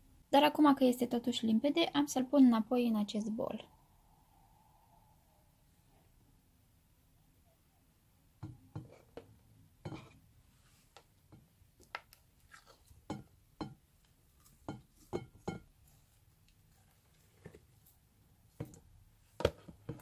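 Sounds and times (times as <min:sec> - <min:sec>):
plastic containers knocking and clicking: 0:18.6 - 0:20.0.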